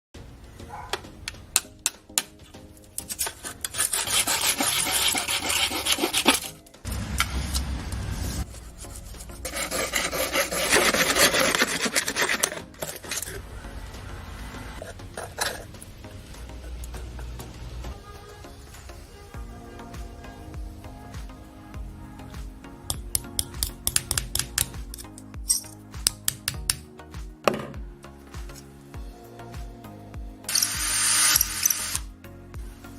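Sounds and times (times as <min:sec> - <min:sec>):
rasping on plastic pipe: 0:03.2 - 0:06.6, 0:08.5 - 0:13.3.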